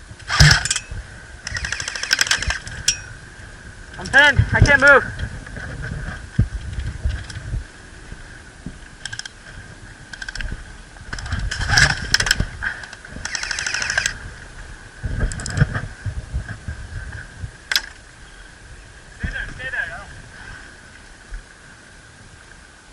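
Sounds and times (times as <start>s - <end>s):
single airsoft shots or clicks: 0.2s - 0.8s.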